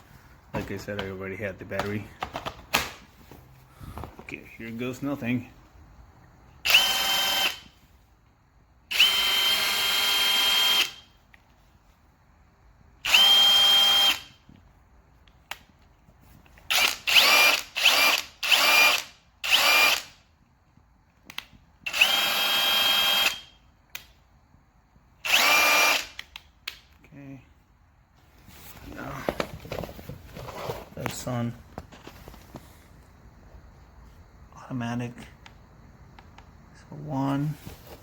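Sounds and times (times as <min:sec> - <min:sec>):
impact wrench motor whine: 0:06.6 - 0:07.7, 0:08.9 - 0:11.1, 0:13.0 - 0:14.4, 0:16.7 - 0:20.2, 0:21.8 - 0:23.5, 0:25.2 - 0:26.2.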